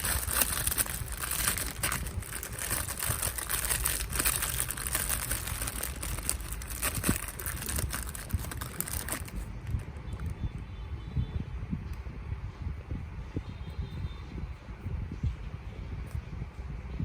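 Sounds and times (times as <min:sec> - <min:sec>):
packaging crinkling and rustling: 0:00.0 - 0:10.4.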